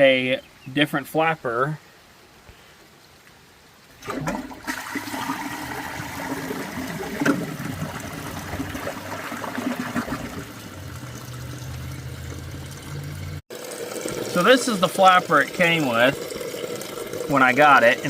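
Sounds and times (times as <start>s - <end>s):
toilet flushing: 4.0s - 18.0s.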